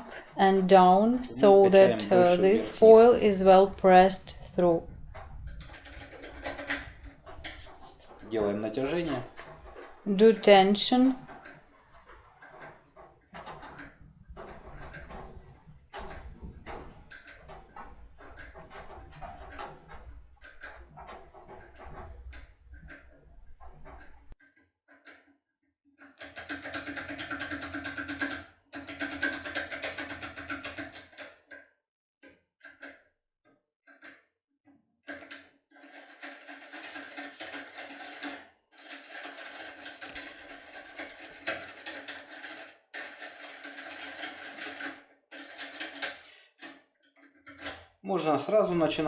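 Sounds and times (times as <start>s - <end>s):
lock pick rattling in lock: 35.1s - 47.8s.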